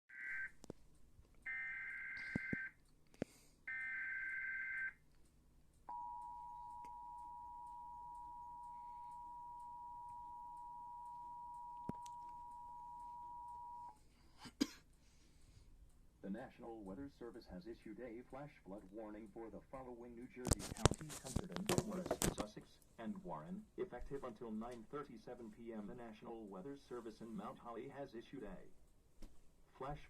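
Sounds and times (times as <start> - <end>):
two-tone alert signal: 5.9 - 13.9.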